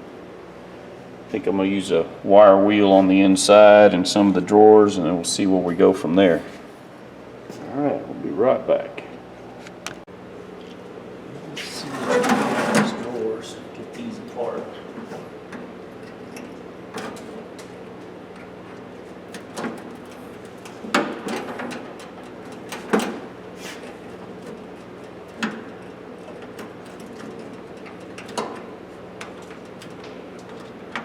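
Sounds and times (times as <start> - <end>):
metal toolbox drawers clanking: 11.7 - 13.2.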